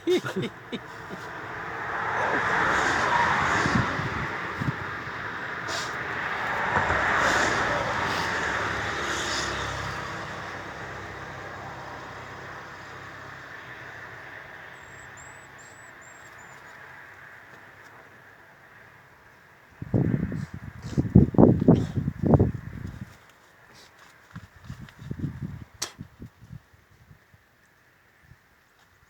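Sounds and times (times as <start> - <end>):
motor vehicle noise: 0.0 - 23.2.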